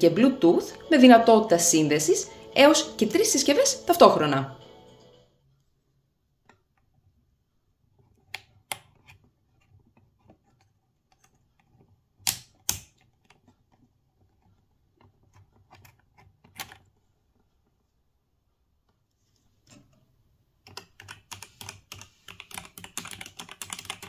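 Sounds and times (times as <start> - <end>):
mechanical keyboard key clicks: 20.7 - 24.0.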